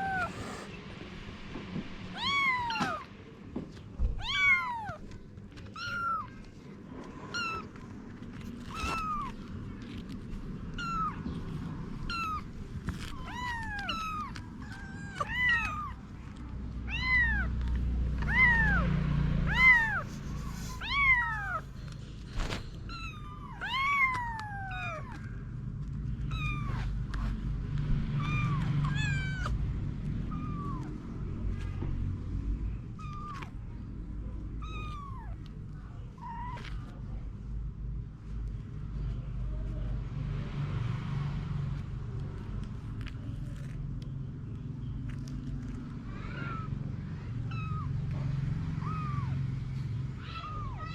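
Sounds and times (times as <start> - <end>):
kittens mewing: 0.0 - 0.8, 7.2 - 25.5, 26.2 - 27.3, 28.1 - 31.7, 32.8 - 37.0, 45.2 - 50.9.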